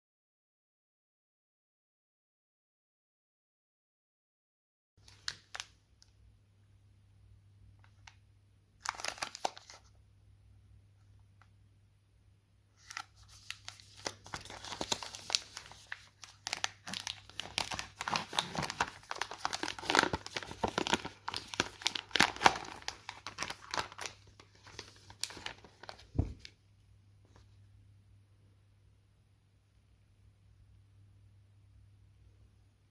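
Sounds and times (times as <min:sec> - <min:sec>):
packaging crinkling and tearing: 0:05.0 - 0:05.8, 0:08.8 - 0:10.0, 0:12.8 - 0:26.5.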